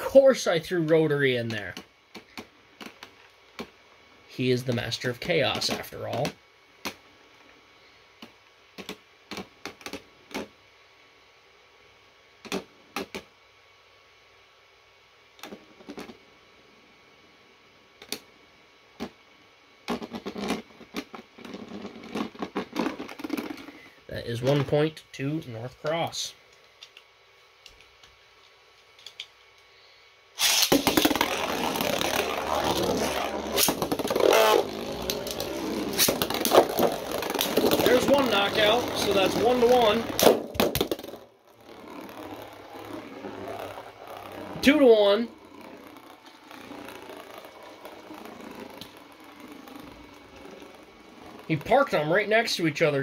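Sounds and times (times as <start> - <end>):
spinning tops clashing: 30.4 - 41.2
spinning tops clacking: 30.4 - 52.1
spinning tops whirring: 30.4 - 53.0.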